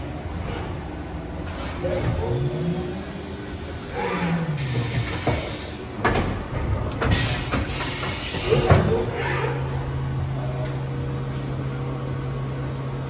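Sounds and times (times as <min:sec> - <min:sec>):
machine motors whining: 0:01.4 - 0:06.0.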